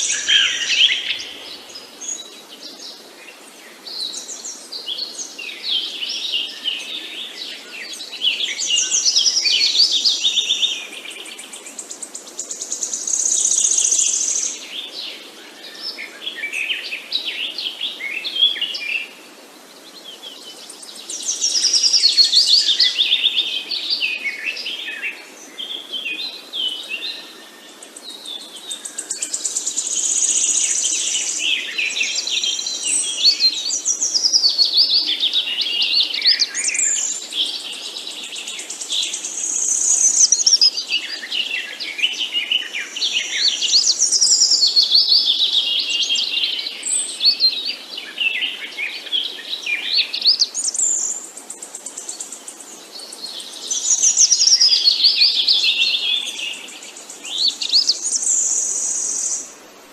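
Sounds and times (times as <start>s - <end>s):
songbirds singing and chirping: 0.0s - 59.9s.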